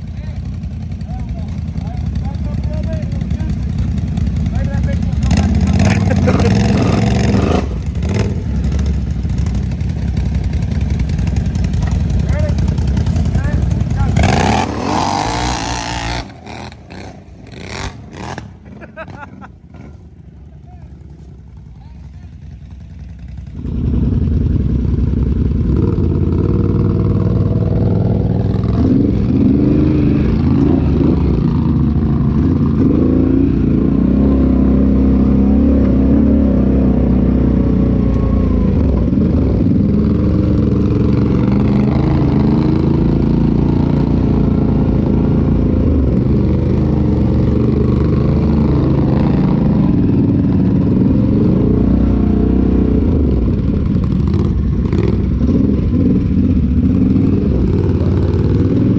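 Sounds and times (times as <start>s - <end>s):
off-road vehicle engine revving: 0.0s - 58.9s
vehicle rattling: 0.0s - 58.9s.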